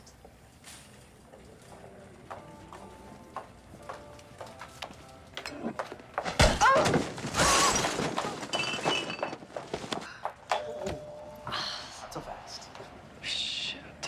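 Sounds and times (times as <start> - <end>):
something shattering: 6.4 - 9.5.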